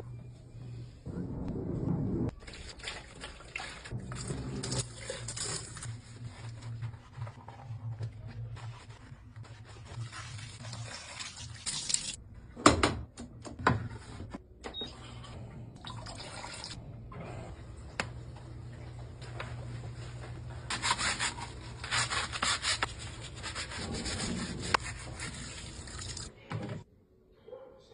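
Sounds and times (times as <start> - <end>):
water running and splashing: 25.1 - 26.3.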